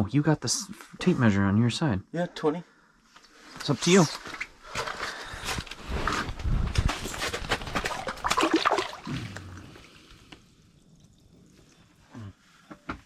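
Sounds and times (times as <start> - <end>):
water splashing and sloshing: 7.0 - 12.0.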